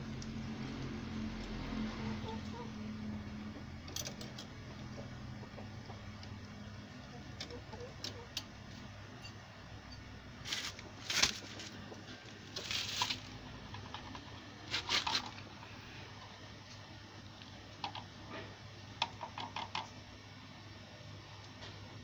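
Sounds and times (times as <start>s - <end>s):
steady low hum: 0.0s - 19.2s
tools clicking and clattering: 3.8s - 4.6s.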